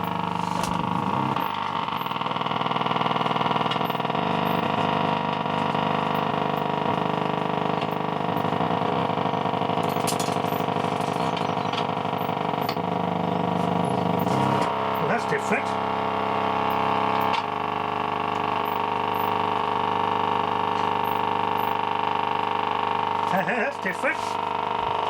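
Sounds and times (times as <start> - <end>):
sharp radio crackles: 0.0 - 2.2, 13.5 - 17.5, 23.2 - 24.4
radio loudspeaker buzzing drone: 0.0 - 25.0.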